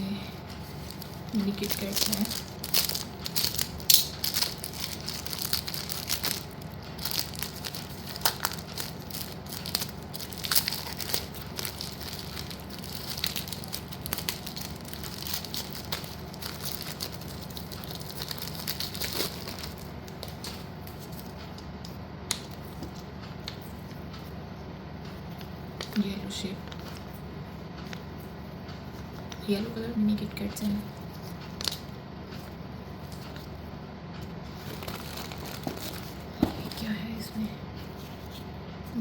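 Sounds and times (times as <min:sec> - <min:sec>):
plastic packets crinkling: 0:00.5 - 0:21.5, 0:34.5 - 0:37.0.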